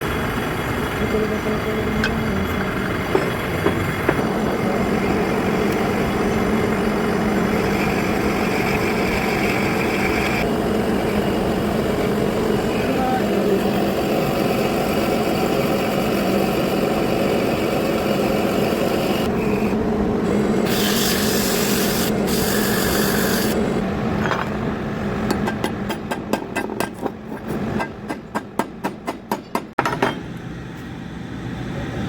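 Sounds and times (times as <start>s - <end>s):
metal lathe humming: 0.0s - 24.0s.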